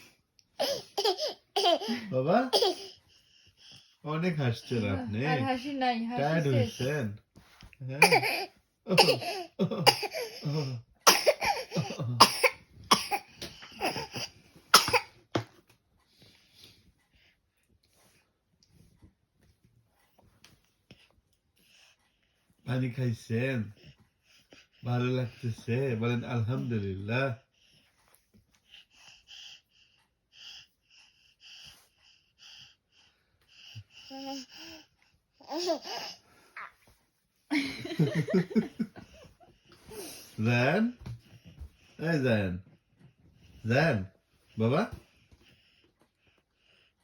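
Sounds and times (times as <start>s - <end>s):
small child coughing: 0.6s - 3.0s, 8.0s - 15.1s.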